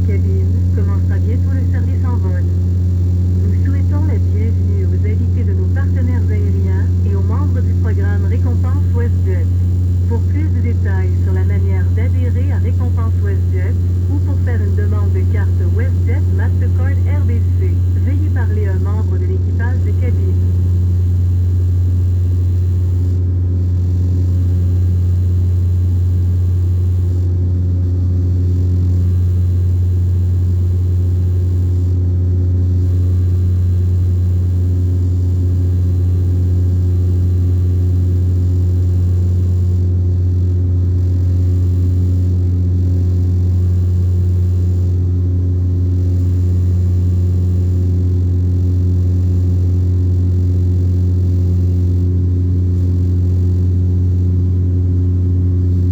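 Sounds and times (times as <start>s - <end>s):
airplane engine hum: 0.0s - 44.0s.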